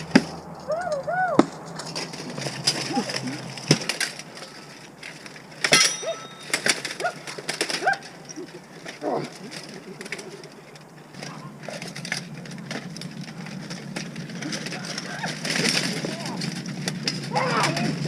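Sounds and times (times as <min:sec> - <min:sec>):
weapons striking shields and armor: 0:05.6 - 0:07.0.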